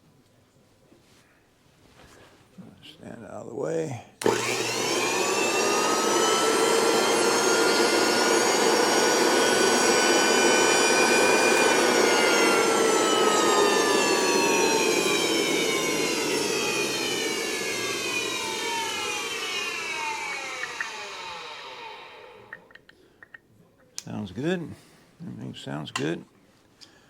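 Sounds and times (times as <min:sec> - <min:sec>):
grinder wheel whining: 0:04.2 - 0:22.8.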